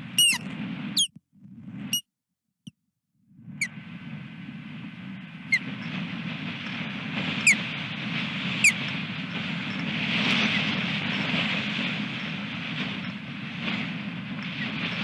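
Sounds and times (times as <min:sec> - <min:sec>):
osprey chirping: 0:00.0 - 0:00.4
wind buffeting microphone: 0:00.0 - 0:01.9, 0:03.4 - 0:15.0.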